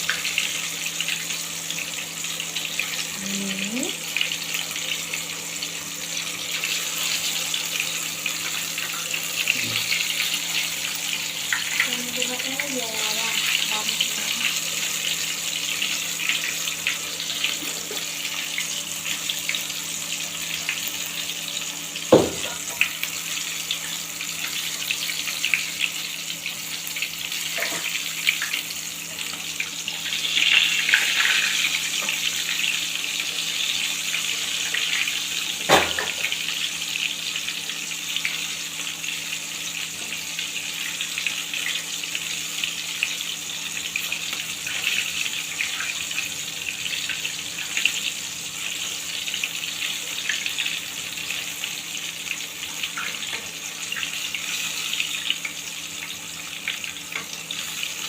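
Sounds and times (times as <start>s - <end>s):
chicken frying in hot oil: 0.0s - 58.0s.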